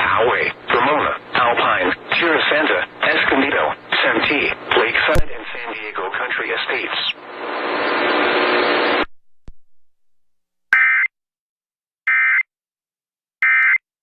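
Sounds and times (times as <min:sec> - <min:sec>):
hissing broadcast noise: 0:00.1 - 0:09.1.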